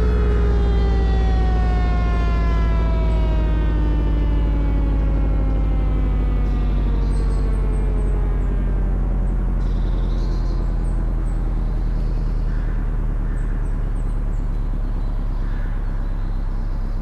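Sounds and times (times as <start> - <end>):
siren winding down: 0.0 - 12.4
steady low rumble: 0.0 - 17.0
faint bird chirps: 9.3 - 17.0.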